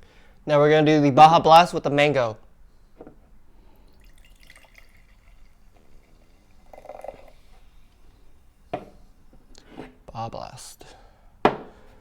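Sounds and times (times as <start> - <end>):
soda pouring into a cup: 3.8 - 8.8.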